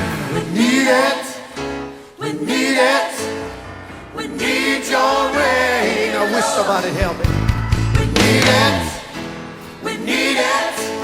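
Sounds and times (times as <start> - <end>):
gospel band playing: 4.1 - 11.0.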